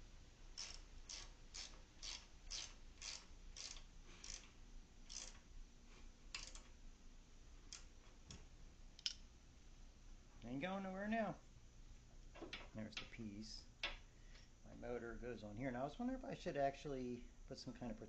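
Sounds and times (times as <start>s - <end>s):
ratchet wrench tightening bolt: 0.6s - 5.4s, 6.3s - 6.7s.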